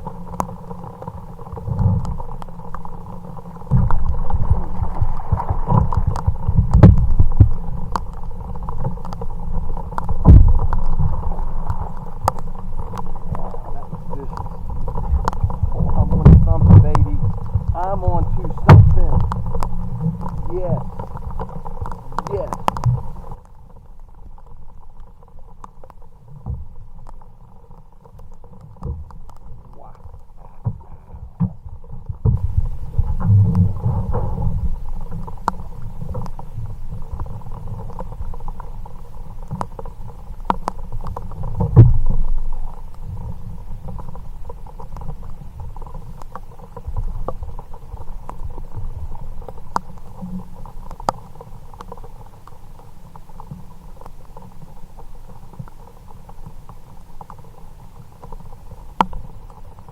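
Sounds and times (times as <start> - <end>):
faint steady hum: 0.0 - 59.9
light ticks: 0.0 - 59.9
low rumbling noise: 0.0 - 59.9
heavy thumps: 3.6 - 8.1, 8.7 - 23.4.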